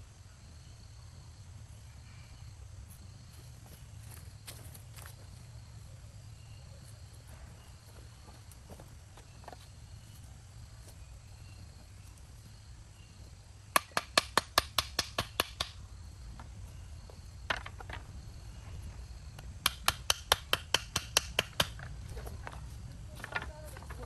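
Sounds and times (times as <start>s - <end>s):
rapid sharp knocks: 13.7s - 15.8s, 19.6s - 21.9s.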